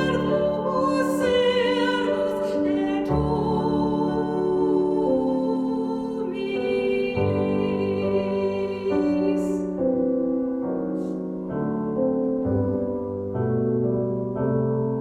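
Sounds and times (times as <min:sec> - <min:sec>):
choir singing held chords: 0:00.0 - 0:09.8
piano accompaniment: 0:00.0 - 0:15.0.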